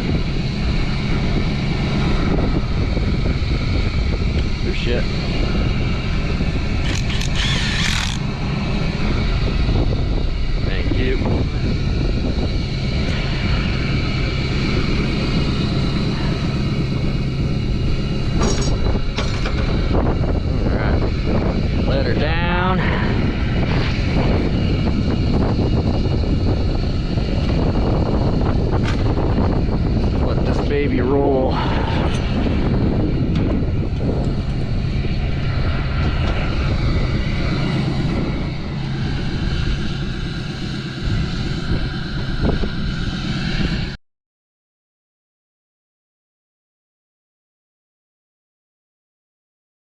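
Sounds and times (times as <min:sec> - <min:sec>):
engine running: 0:00.0 - 0:44.0
metallic clank: 0:18.4 - 0:19.7.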